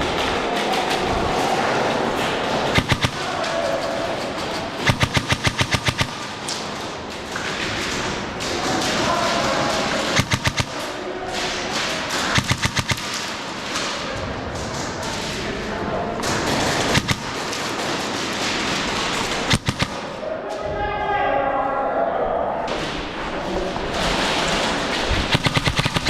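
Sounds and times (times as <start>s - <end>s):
airsoft guns firing: 0.0s - 14.0s, 16.2s - 20.2s, 24.9s - 26.0s
indoor arena hubbub: 0.0s - 26.0s.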